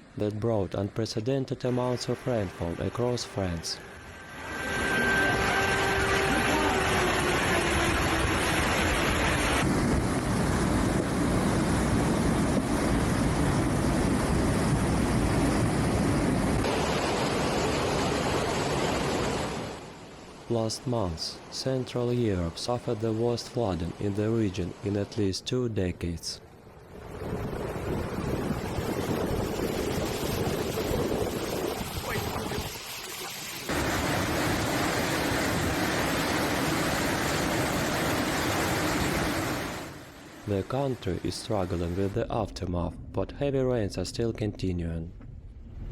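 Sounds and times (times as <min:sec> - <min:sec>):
floodwater rushing: 0:01.7 - 0:09.7, 0:26.6 - 0:42.1.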